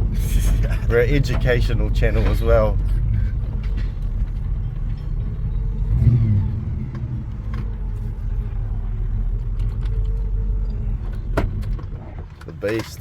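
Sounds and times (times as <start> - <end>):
car engine running: 0.0 - 13.0.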